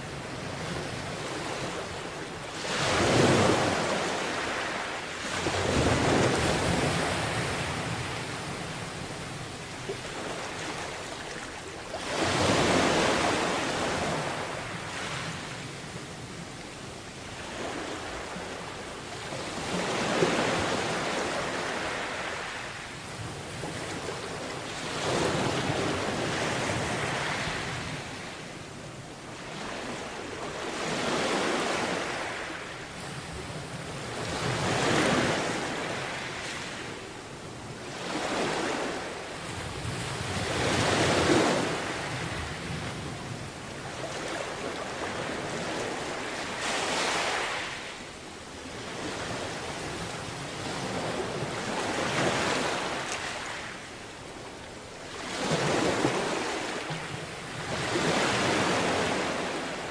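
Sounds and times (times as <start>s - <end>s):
wind on microphone: 0.0s - 11.4s, 33.0s - 47.3s
small waves breaking on beach: 0.0s - 59.9s.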